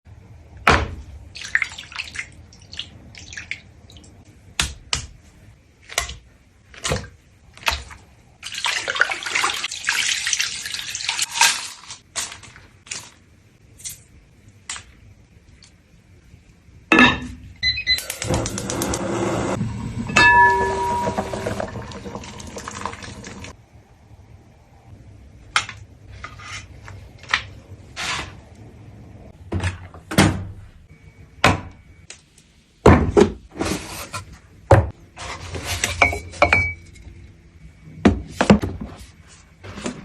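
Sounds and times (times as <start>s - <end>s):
water splashing and dripping: 1.3s - 4.2s.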